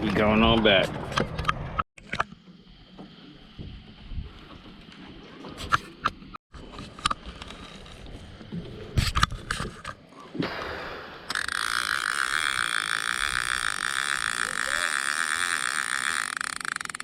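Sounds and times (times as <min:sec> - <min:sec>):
fishing reel line clicker buzzing: 0:11.3 - 0:17.0.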